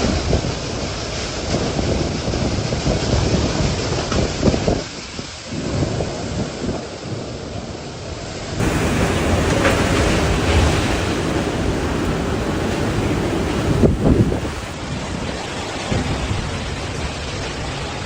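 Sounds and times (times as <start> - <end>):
gusting wind and rain: 0.0 - 18.0
wind buffeting microphone: 8.6 - 15.1.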